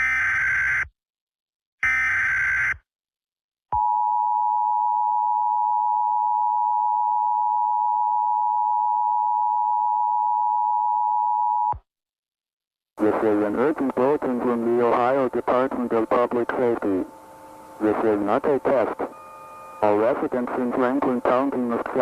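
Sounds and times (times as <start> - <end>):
steady two-tone alarm: 13.6 - 22.0.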